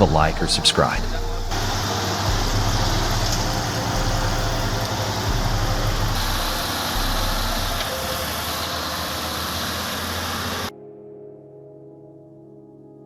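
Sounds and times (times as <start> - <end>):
heavy machinery engine droning: 0.0 - 10.7.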